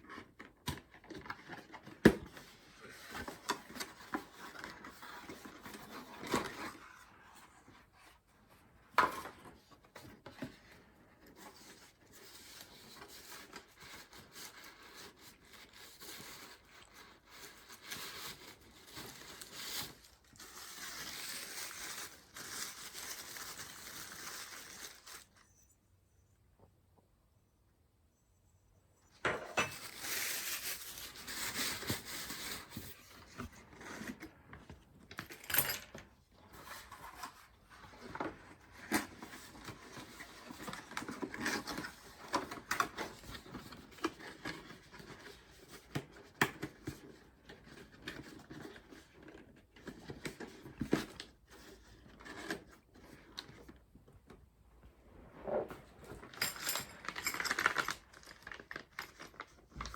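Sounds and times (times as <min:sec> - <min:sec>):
small parts clicking and scraping: 0:56.2 - 0:59.9.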